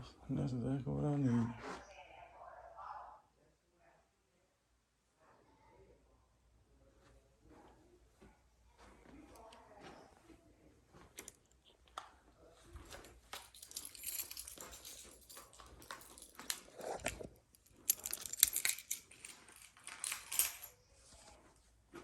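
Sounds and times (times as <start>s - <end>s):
rustling of small objects: 12.6s - 22.0s
clicks and clinks of small objects: 12.9s - 20.8s.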